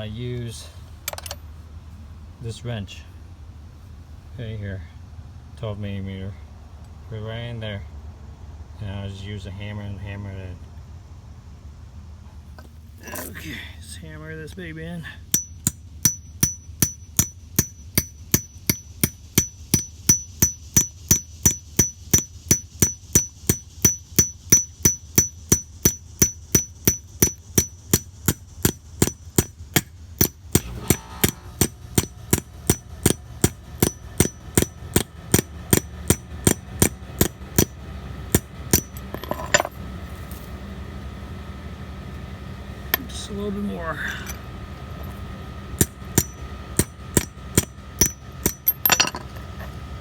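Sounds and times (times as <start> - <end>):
hammer striking metal wrench: 1.1 - 1.4, 15.3 - 39.8, 45.8 - 49.8.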